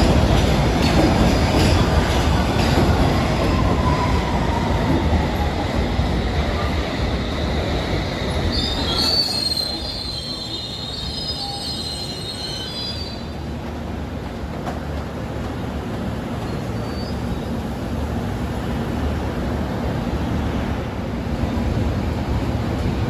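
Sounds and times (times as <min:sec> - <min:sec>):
train wheels squealing on rails: 0:00.0 - 0:13.7, 0:16.4 - 0:18.0
train rumbling: 0:00.0 - 0:23.0.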